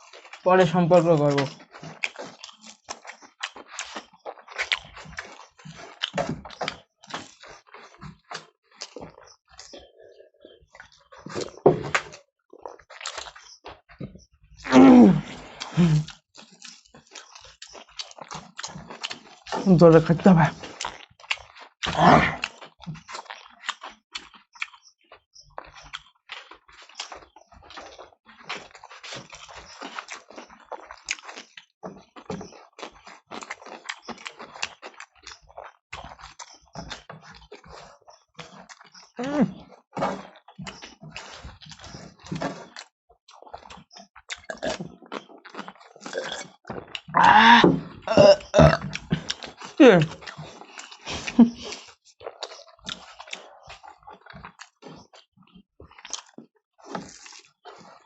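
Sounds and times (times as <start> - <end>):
chewing and wet mouth smacking: 0.0 - 58.0.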